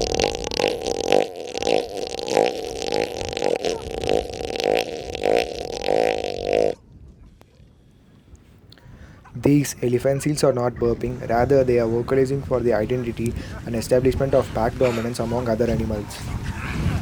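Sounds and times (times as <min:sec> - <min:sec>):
elephant seals pulsed calls: 0:00.0 - 0:06.8.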